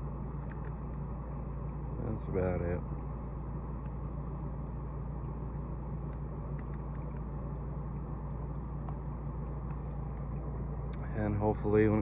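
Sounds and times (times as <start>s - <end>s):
low mechanical hum: 0.0s - 12.0s
faint clicks: 6.0s - 7.3s.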